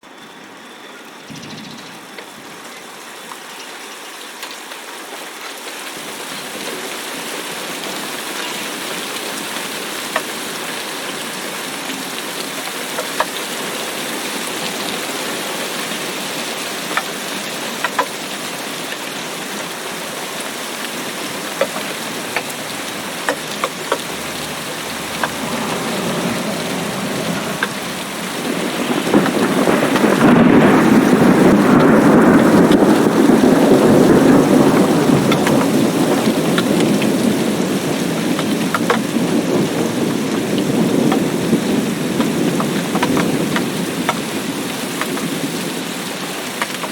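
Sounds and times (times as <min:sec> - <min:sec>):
steady rain: 0:00.0 - 0:46.9
sharp raindrops striking close: 0:00.1 - 0:46.9
thunder rolling: 0:20.6 - 0:44.4.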